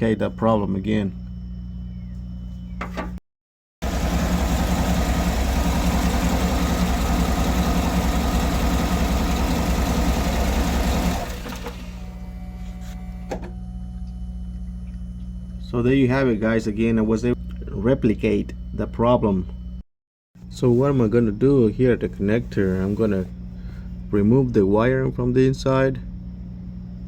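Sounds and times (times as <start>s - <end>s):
car engine running: 3.8s - 12.2s.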